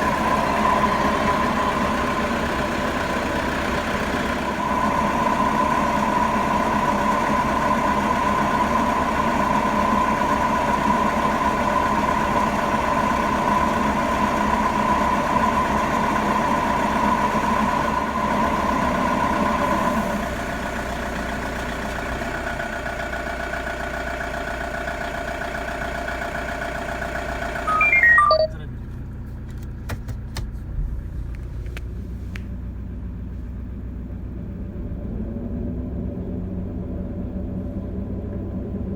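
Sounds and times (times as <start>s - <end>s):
van differential droning: 0.0s - 38.9s
falling run of tones: 27.7s - 28.6s.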